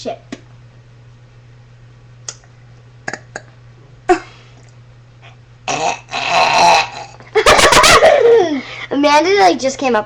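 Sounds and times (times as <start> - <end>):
girl burping: 5.7 - 7.2.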